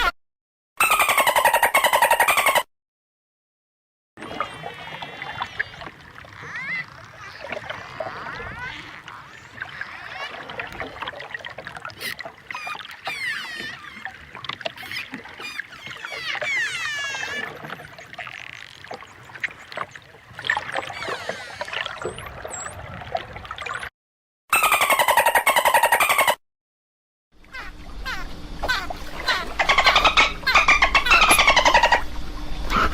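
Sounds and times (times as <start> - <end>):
dolphins whistling: 0.8 - 2.7, 12.0 - 22.8, 24.5 - 26.4, 27.5 - 32.9.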